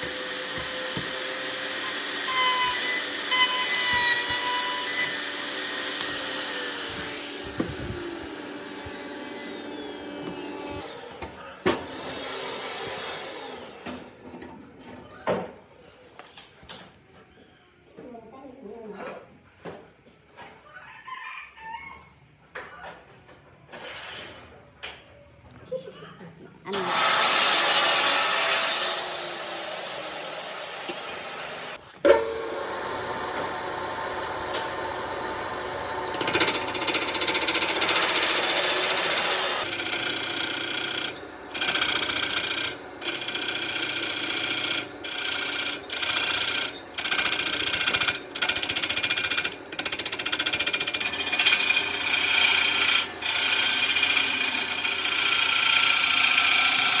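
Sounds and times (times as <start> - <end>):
power tool grinding wood: 0.0 - 11.0, 26.7 - 31.8, 32.4 - 57.0.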